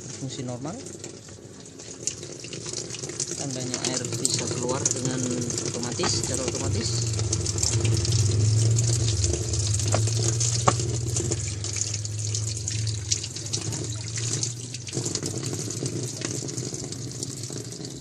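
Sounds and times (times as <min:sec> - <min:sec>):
water filling washing machine: 0:00.0 - 0:18.0
low hum: 0:04.3 - 0:18.0.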